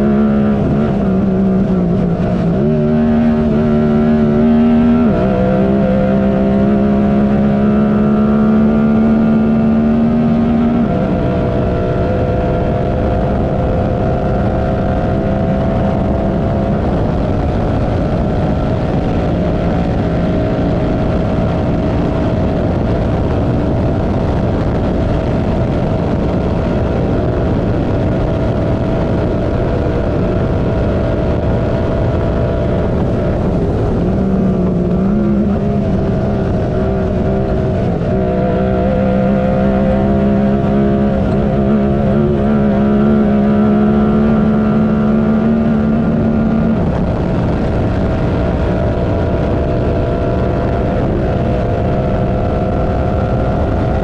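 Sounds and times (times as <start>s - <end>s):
engine running hard: 0.0s - 54.0s
steady rush of noise: 0.0s - 54.0s.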